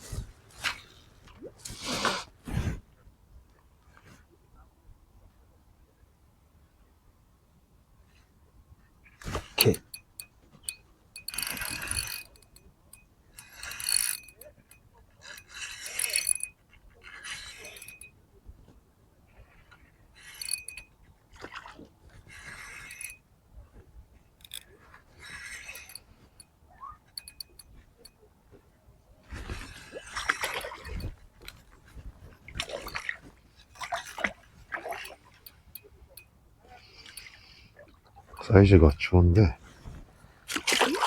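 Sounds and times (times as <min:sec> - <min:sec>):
faint reel clicks: 0:09.3 - 0:18.2, 0:20.2 - 0:20.9, 0:22.5 - 0:23.2, 0:24.4 - 0:26.5, 0:27.1 - 0:28.2
spinning reel being cranked: 0:09.4 - 0:12.6, 0:13.4 - 0:16.6, 0:17.2 - 0:18.1, 0:20.2 - 0:20.9, 0:22.8 - 0:23.2, 0:24.4 - 0:24.6, 0:25.5 - 0:26.1, 0:27.2 - 0:27.7.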